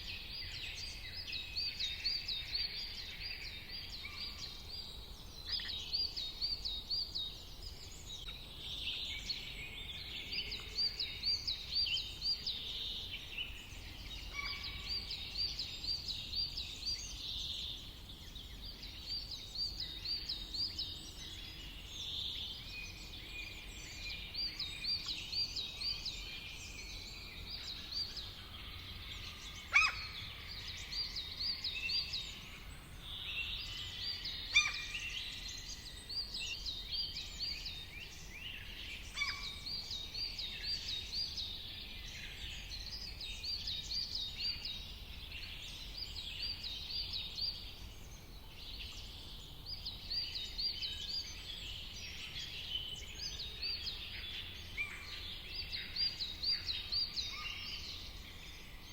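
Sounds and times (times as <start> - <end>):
songbirds chirping chorus: 0.0 - 58.9
loud sharp bird calls: 29.5 - 30.6.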